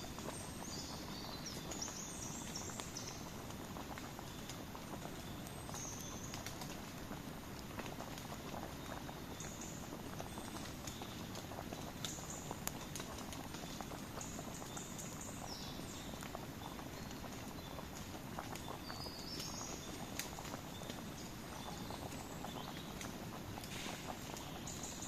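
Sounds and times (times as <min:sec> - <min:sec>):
campfire crackling: 0:00.0 - 0:25.0
fire pops: 0:00.0 - 0:25.0
faint bird chirps: 0:13.6 - 0:25.0.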